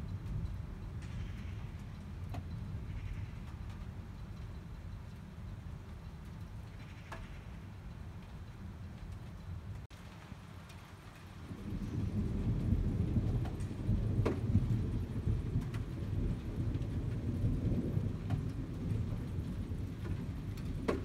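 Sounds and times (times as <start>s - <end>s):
rolling thunder: 11.3s - 21.0s.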